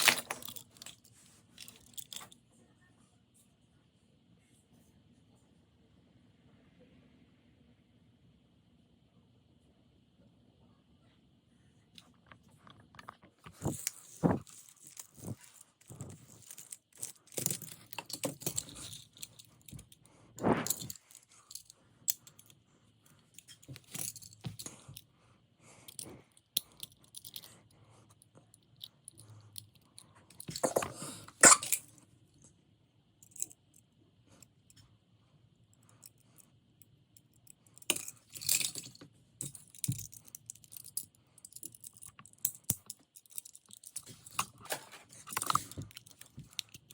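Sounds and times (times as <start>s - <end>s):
toy cars clicking and rattling: 13.5s - 22.6s, 37.4s - 46.9s.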